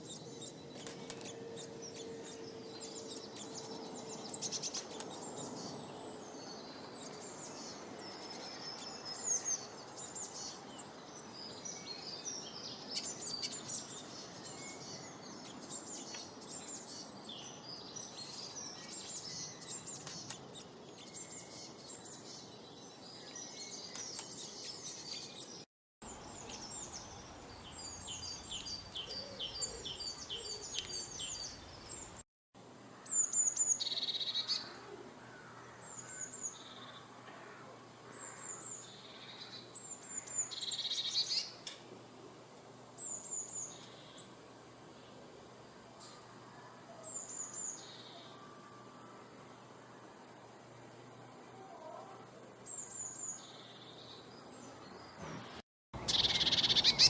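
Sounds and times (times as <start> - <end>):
birds chirping and singing: 26.1 - 32.2, 56.0 - 57.0.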